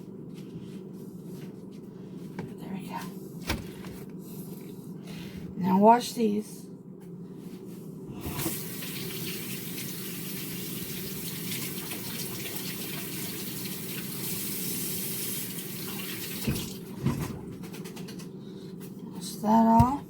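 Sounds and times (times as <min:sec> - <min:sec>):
kitchen tap running: 0:08.2 - 0:17.2.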